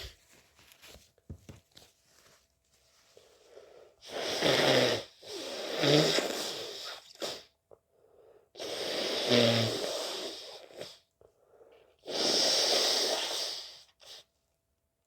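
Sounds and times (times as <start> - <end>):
person blowing nose: 0.0 - 0.2, 3.5 - 7.6, 8.6 - 11.0, 12.0 - 14.3.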